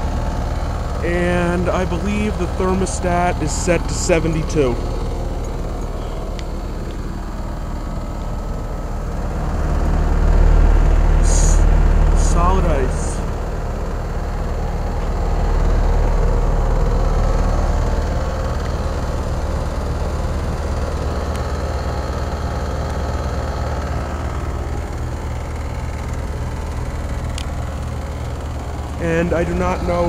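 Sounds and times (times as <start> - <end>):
heat pump humming: 0.0 - 30.0.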